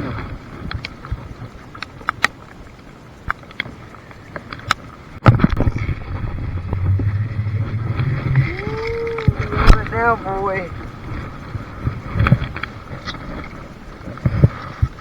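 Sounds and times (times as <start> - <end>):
steady low hum: 5.2 - 12.2.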